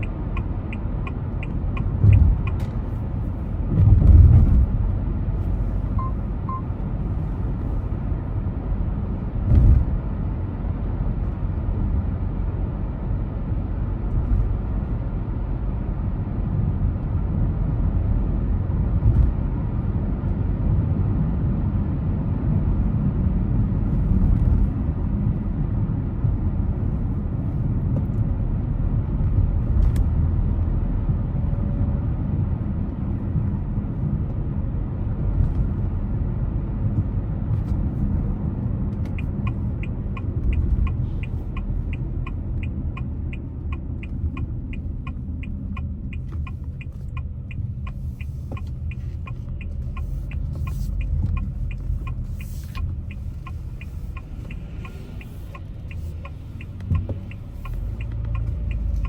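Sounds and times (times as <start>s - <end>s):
turn signal ticking: 0.0s - 7.9s, 37.6s - 59.0s
car road and engine rumble: 0.0s - 59.0s.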